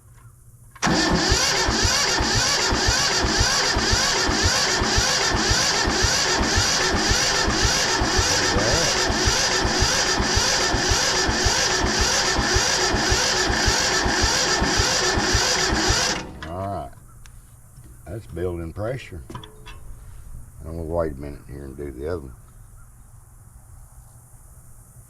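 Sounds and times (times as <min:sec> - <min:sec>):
diesel engine cranking on starter: 0:00.8 - 0:17.0.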